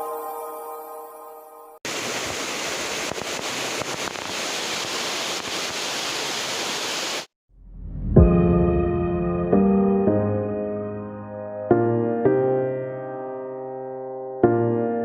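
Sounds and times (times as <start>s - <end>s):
waterfall rushing: 1.9s - 7.3s.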